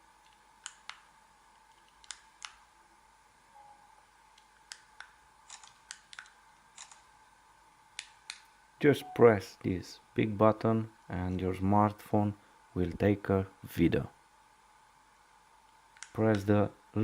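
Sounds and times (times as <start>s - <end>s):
faint tone: 3.5s - 4.1s, 8.8s - 9.6s.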